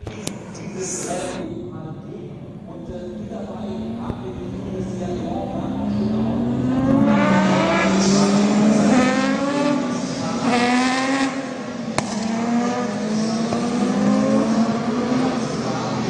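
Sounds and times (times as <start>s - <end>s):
racing car engine accelerating: 2.4s - 16.0s.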